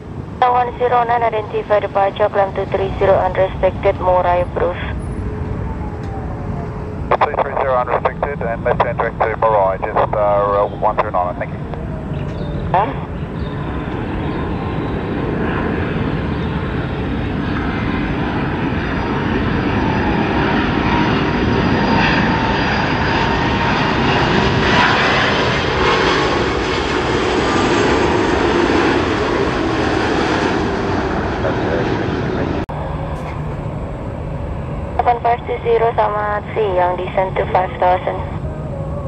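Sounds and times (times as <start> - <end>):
airliner engines running: 0.0 - 39.0.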